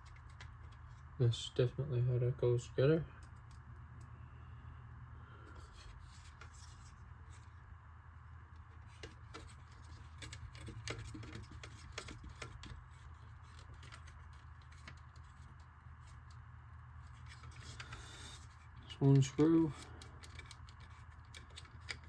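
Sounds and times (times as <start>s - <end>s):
low steady hum: 0.0s - 22.0s
screwdriver clicks and scrapes: 19.3s - 22.0s.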